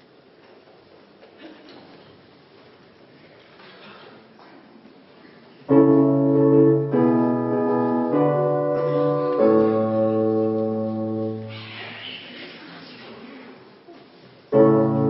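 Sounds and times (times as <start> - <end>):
piano chords: 5.7 - 11.6, 14.5 - 15.0.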